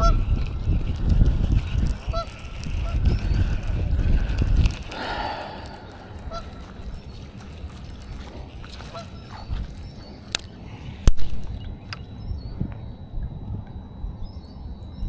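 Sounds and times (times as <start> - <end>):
geese honking: 1.8 - 3.1, 4.9 - 10.8.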